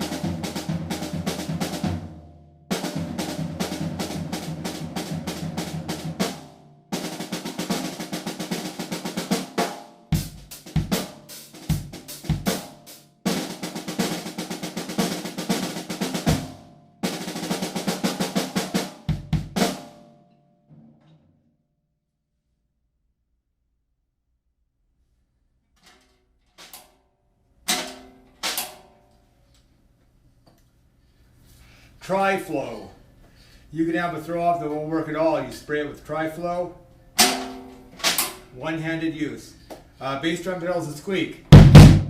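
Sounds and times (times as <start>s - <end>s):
snare and tom rolls: 0.0s - 20.1s, 27.7s - 29.0s, 37.2s - 38.5s, 41.5s - 42.0s
drums ringing out: 0.0s - 21.2s, 37.2s - 39.0s, 41.5s - 42.0s
bass drum kicks: 41.5s - 42.0s.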